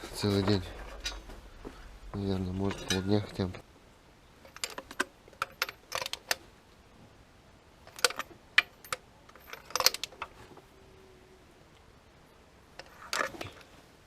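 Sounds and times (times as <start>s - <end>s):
metal hand tools clinking: 0.7s - 1.4s, 2.5s - 3.5s.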